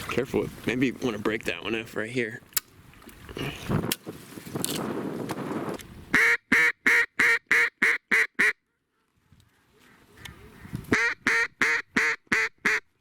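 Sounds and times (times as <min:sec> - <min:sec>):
duck quacking: 0:06.1 - 0:08.6, 0:10.2 - 0:12.9.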